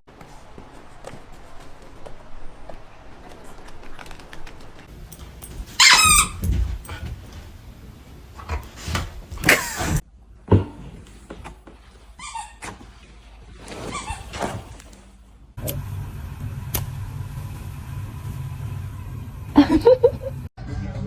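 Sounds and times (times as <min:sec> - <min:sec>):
dog barking and yelping: 0:05.7 - 0:07.0.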